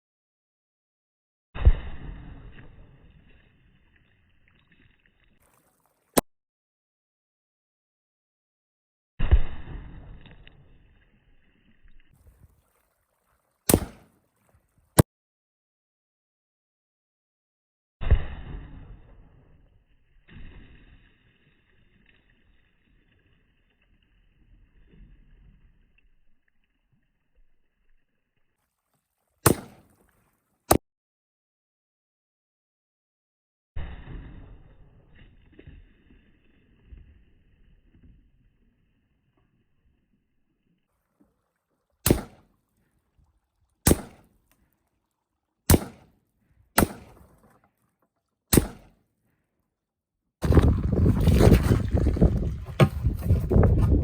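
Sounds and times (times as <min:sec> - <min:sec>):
rifle shots: 0:13.7 - 0:14.0, 0:29.4 - 0:29.8, 0:42.1 - 0:42.4, 0:43.9 - 0:44.2, 0:45.7 - 0:46.1, 0:46.8 - 0:47.2, 0:48.5 - 0:48.9.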